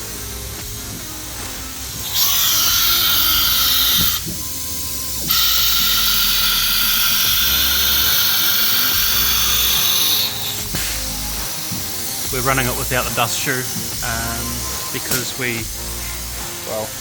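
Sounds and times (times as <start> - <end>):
spindle high-pitched hissing whine: 0.0 - 17.0.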